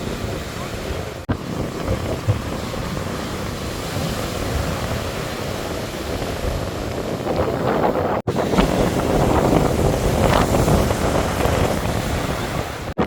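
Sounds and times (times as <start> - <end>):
heavy surf: 0.0 - 13.0
wind buffeting microphone: 0.0 - 13.0.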